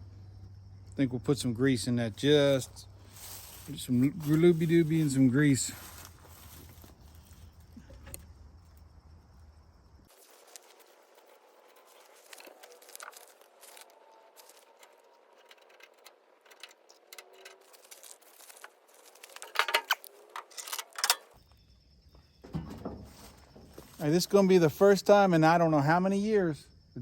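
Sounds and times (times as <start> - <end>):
metallic clicks and rattles of latch: 19.4 - 21.4.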